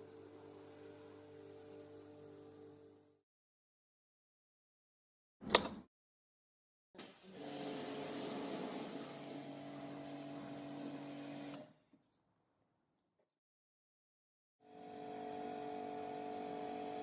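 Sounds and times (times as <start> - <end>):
hissing spray: 7.0 - 9.5
pressure washer motor hum: 7.0 - 11.6.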